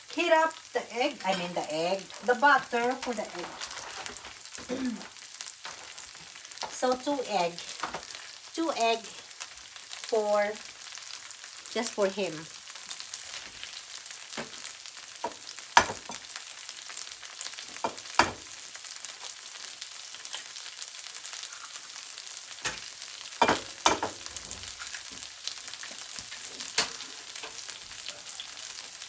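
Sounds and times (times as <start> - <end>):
food sizzling in hot oil: 0.0 - 29.0
kitchen utensils knocking: 1.2 - 5.1, 5.7 - 7.0, 7.8 - 8.2, 15.8 - 16.2, 17.8 - 18.4, 23.4 - 24.6, 26.5 - 27.6.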